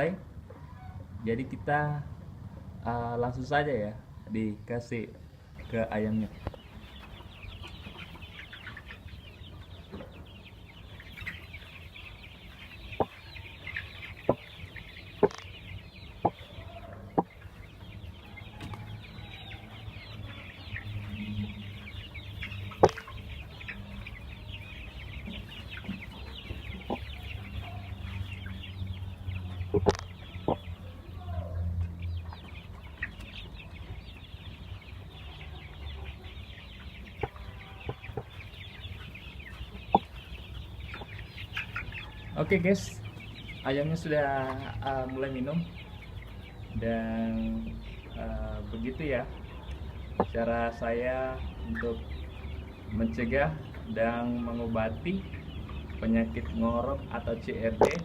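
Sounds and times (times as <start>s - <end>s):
chickens clucking and cheeping: 0.0s - 58.0s
sharp clicks and knocks: 15.2s - 15.5s, 57.8s - 58.0s.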